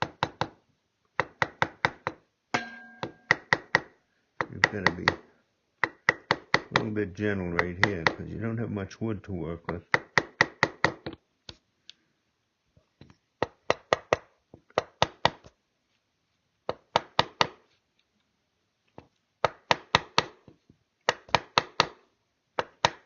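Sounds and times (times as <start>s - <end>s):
mallet tapping wood chisel: 0.0s - 8.4s, 9.6s - 11.2s, 13.4s - 15.6s, 16.7s - 17.6s, 19.4s - 22.0s, 22.6s - 23.0s.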